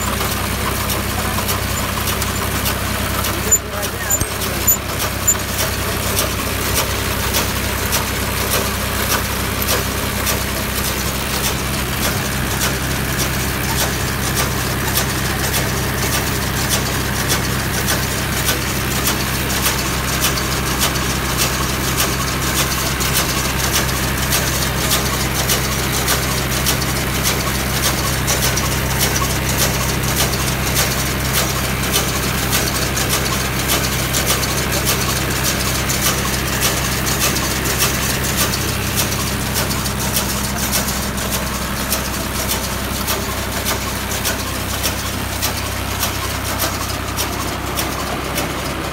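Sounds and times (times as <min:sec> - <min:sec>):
fast regular ticking: 0:00.0 - 0:06.4
tractor diesel engine running: 0:00.0 - 0:48.9.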